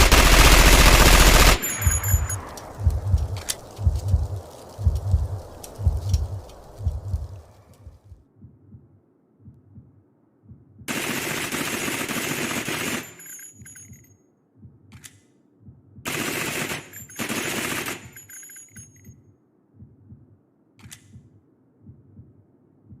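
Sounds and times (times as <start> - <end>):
submachine gun bursts: 0.0 - 2.7, 10.9 - 13.4, 16.1 - 18.5
low thumping pulses: 0.0 - 10.9
metallic ringing: 1.3 - 2.9.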